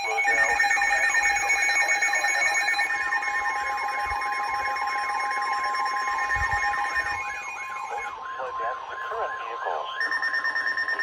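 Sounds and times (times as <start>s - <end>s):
warbling siren-like tone: 0.0s - 11.0s.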